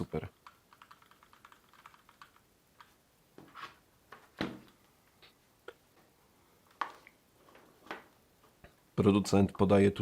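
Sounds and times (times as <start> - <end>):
keyboard clicks and scrapes: 0.3 - 2.9.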